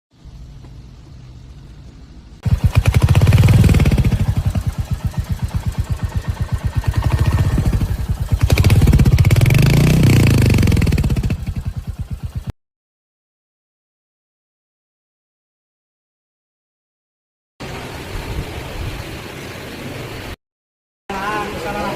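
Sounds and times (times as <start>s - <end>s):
motorcycle engine idling and revving: 0.2s - 12.5s.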